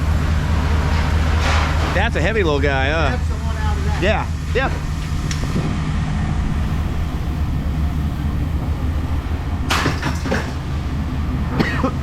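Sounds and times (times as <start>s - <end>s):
engine idling: 0.0s - 12.0s
metal scrap clattering: 0.7s - 2.0s, 9.7s - 10.7s.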